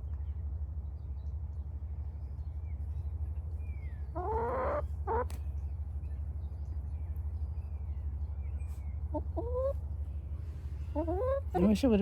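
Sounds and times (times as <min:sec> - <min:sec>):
hen calling: 0:10.9 - 0:11.6.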